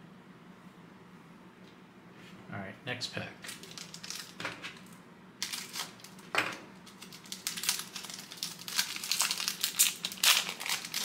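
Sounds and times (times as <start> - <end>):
wrapper being torn and crinkled: 3.4 - 11.0.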